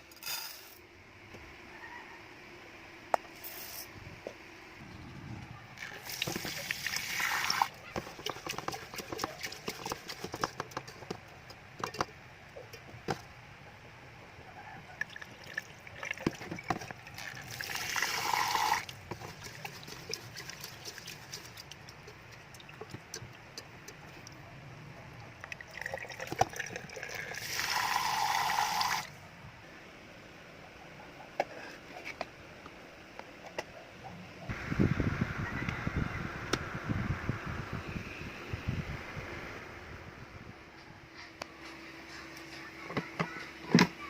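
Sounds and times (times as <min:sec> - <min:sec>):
water pouring: 0:05.8 - 0:10.3, 0:15.0 - 0:23.4, 0:25.4 - 0:29.1.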